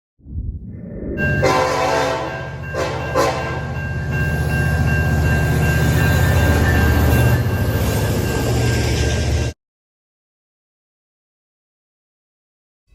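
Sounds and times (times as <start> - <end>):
locomotive horn blasts: 1.4 - 3.8.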